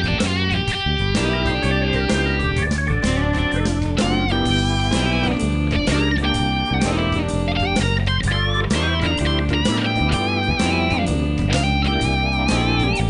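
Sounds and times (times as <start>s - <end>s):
bass line: 0.0s - 13.0s
electric guitar: 0.0s - 13.0s.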